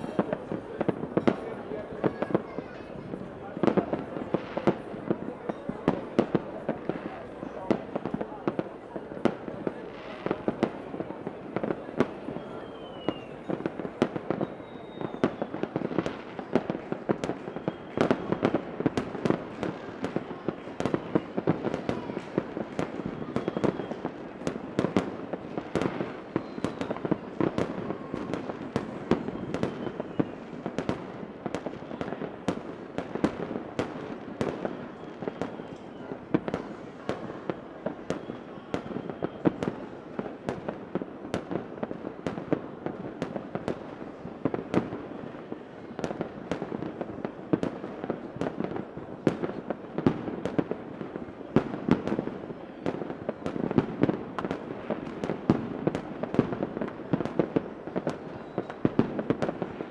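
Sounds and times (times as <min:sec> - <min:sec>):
fireworks bangs and crackling: 0:00.0 - 0:59.9
fireworks whistles: 0:11.6 - 0:40.5, 0:58.1 - 0:59.9.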